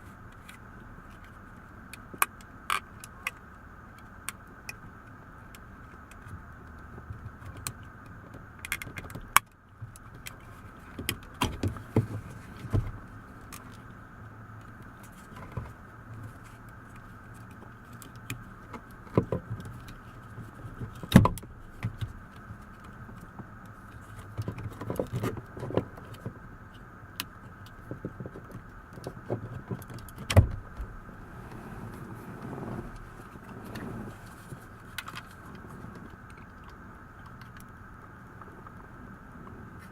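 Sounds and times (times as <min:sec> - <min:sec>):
faint steady hum: 0:00.0 - 0:39.9
plastic parts clicking and tapping: 0:08.6 - 0:12.1.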